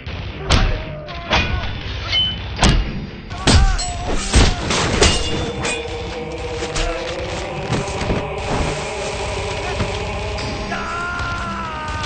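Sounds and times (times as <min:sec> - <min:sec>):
punch and kick impacts: 0:02.6 - 0:05.5.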